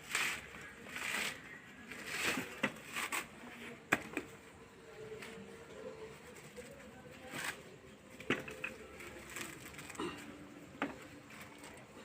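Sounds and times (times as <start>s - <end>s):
knocks and scrapes on coconut husk: 0.0s - 4.3s.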